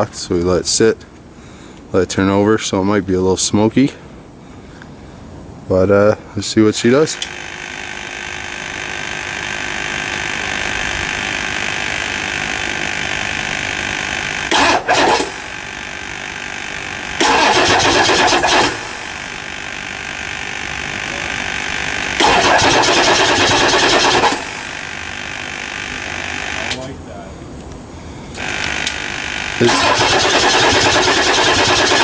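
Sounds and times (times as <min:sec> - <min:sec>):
diesel engine cranking: 0:06.9 - 0:26.9, 0:28.2 - 0:32.0
loud bursts of engine noise: 0:07.0 - 0:27.0, 0:28.2 - 0:32.0.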